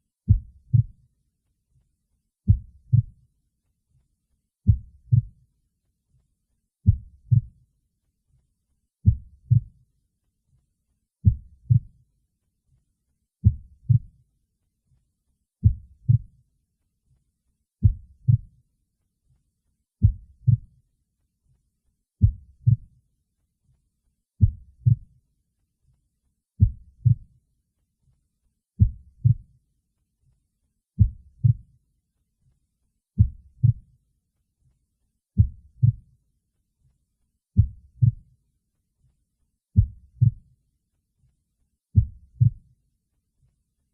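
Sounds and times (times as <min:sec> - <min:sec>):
heartbeat thuds: 0:00.3 - 0:01.0, 0:02.5 - 0:03.2, 0:04.7 - 0:05.4, 0:06.8 - 0:07.5, 0:09.0 - 0:09.7, 0:11.2 - 0:11.9, 0:13.4 - 0:14.1, 0:15.6 - 0:16.3, 0:17.8 - 0:18.5, 0:20.0 - 0:20.7, 0:22.2 - 0:22.9, 0:24.4 - 0:25.0, 0:26.6 - 0:27.3, 0:28.8 - 0:29.4, 0:31.0 - 0:31.6, 0:33.2 - 0:33.8, 0:35.4 - 0:36.0, 0:37.6 - 0:38.2, 0:39.8 - 0:40.4, 0:42.0 - 0:42.6.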